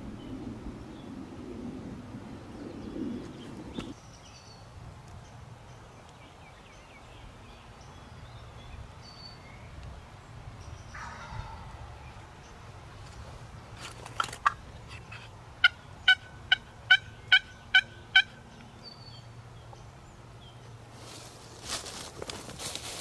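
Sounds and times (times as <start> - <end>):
songbirds chirping: 0.0 - 23.0
wild turkey gobbling: 11.0 - 11.9, 15.6 - 18.4.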